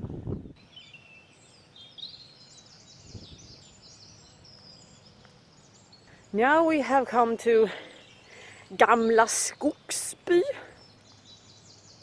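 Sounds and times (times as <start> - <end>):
songbirds singing: 0.5 - 12.0.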